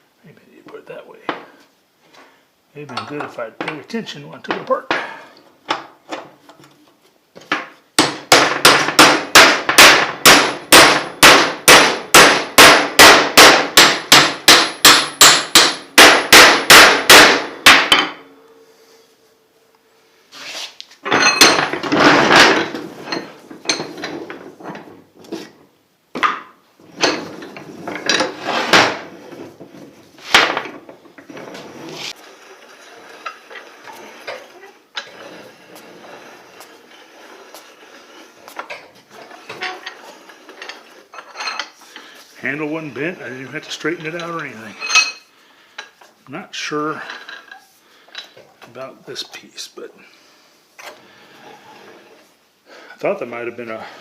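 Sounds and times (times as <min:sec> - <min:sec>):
metal clanks and rattles: 0:21.0 - 0:25.6, 0:26.2 - 0:31.6.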